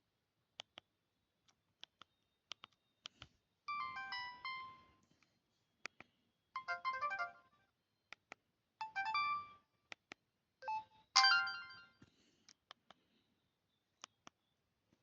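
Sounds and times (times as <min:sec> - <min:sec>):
sharp clicks: 0:01.5 - 0:03.3
phone ringtone melody: 0:03.7 - 0:05.0, 0:06.6 - 0:07.5, 0:08.8 - 0:09.6, 0:10.6 - 0:12.0.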